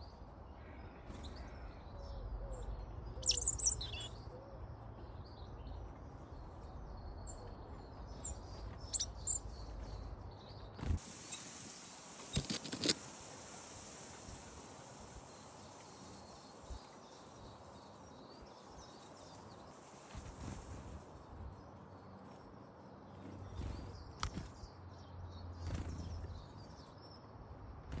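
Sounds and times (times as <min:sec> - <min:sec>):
small birds chirping: 0:00.0 - 0:28.0
high steady hiss: 0:11.0 - 0:20.6.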